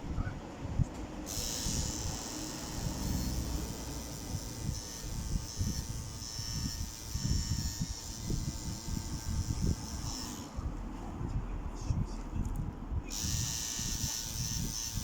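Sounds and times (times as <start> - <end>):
tattoo machine buzzing: 1.2 - 10.6, 13.1 - 15.0.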